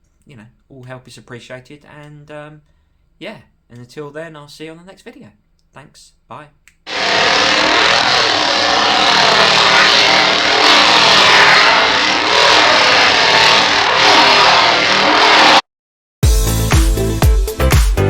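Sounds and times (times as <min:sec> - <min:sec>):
chainsaw engine revving: 0:06.9 - 0:15.6
music with a beat: 0:16.2 - 0:18.0.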